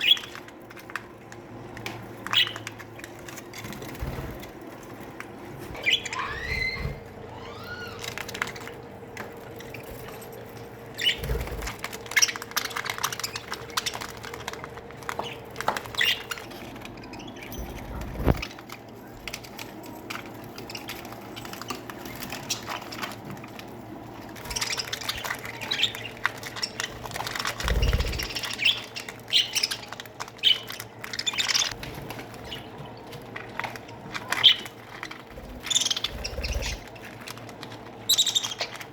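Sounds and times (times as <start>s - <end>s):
budgerigars chattering: 5.8s - 8.0s, 11.0s - 14.1s, 35.4s - 36.8s.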